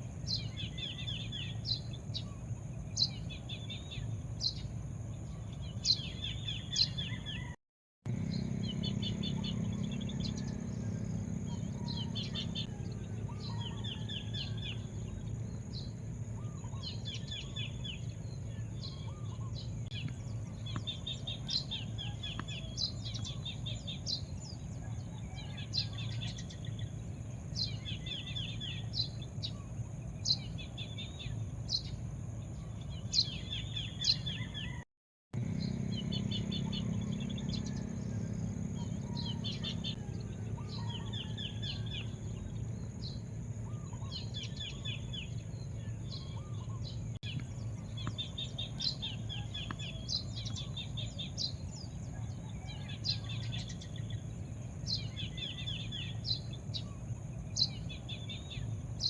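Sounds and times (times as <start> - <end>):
birds chirping: 0.0 - 34.8, 35.4 - 59.0
faint high hum: 8.1 - 34.6, 35.4 - 59.0.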